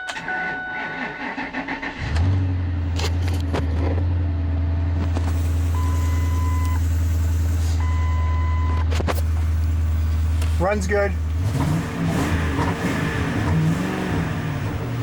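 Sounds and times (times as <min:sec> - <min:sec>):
warning chime: 0:00.0 - 0:01.4
truck engine starting and idling: 0:00.0 - 0:15.0.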